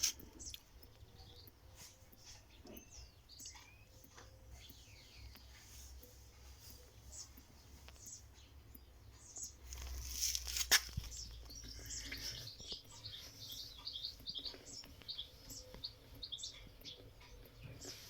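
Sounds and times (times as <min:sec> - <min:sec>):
small birds chirping: 0:00.0 - 0:18.0.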